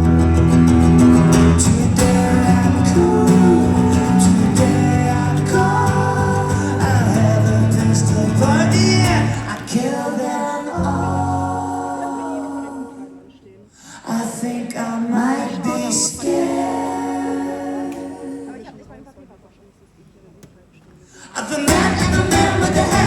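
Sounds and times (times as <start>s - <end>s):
rock band playing live: 0.0s - 9.7s, 21.7s - 23.0s
electric guitar: 0.0s - 9.8s, 21.7s - 23.0s
person singing wordlessly: 1.4s - 13.3s, 21.4s - 23.0s.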